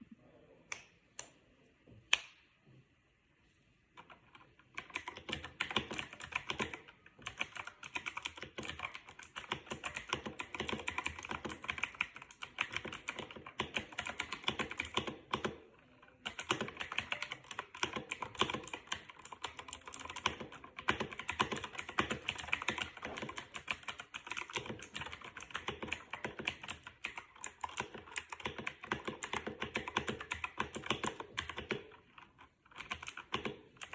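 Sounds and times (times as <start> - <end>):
computer keyboard typing: 4.0 - 33.9.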